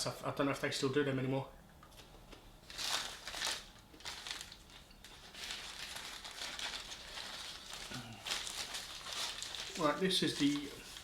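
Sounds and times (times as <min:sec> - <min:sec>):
paper wrapper crinkling: 0:02.6 - 0:11.0.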